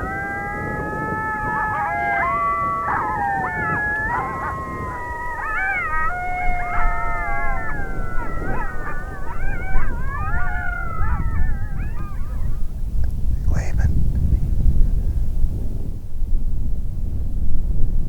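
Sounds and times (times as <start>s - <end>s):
coyotes howling and yipping: 0.0s - 12.9s.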